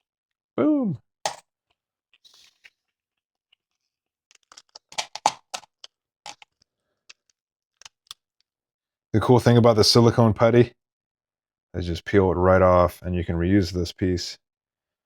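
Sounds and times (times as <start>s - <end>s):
putty peeling crackles and scrapes: 1.7s - 8.4s.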